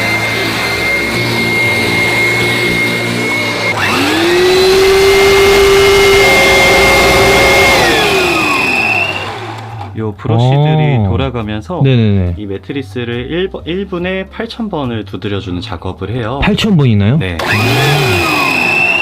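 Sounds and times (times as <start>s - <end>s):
cleaning machine whining: 0.0s - 9.9s, 17.4s - 19.0s
motor spinning up: 0.0s - 9.9s, 17.4s - 19.0s.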